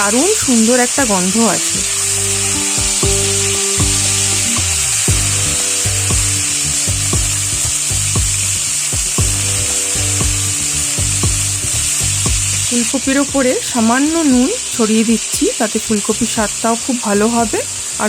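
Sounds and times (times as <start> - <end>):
background music: 0.0 - 18.0
vegetables sizzling in oil: 0.0 - 18.0.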